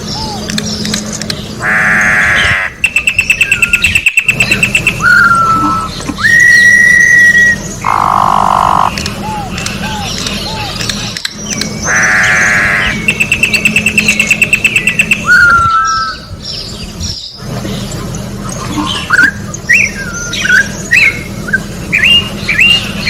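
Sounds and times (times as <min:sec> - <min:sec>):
bird singing trills and whistles: 0:00.0 - 0:23.0.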